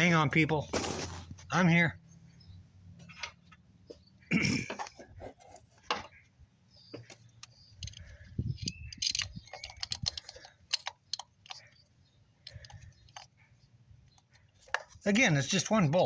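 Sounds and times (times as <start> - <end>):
light clicks of metal tools: 6.8 - 15.0.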